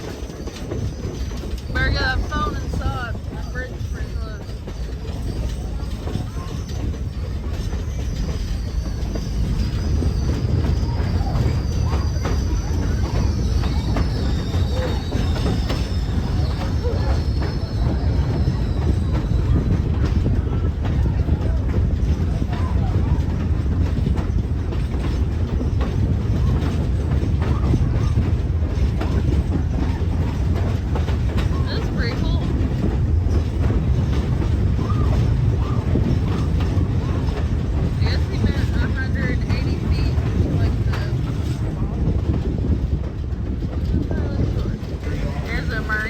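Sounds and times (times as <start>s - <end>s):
train wheels rumbling on rail: 0.0s - 46.0s
high wheel squeal: 0.1s - 21.1s, 33.3s - 41.7s.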